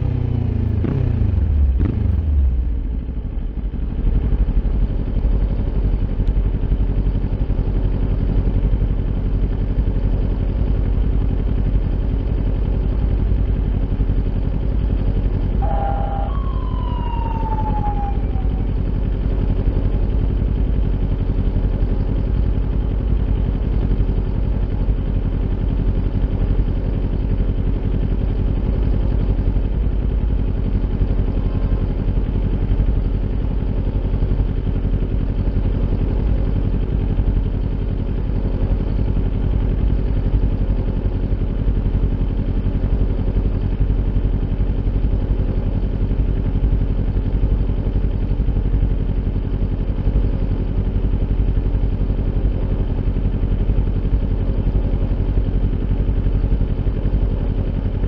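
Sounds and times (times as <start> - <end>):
motorcycle engine running steadily: 0.0 - 58.0.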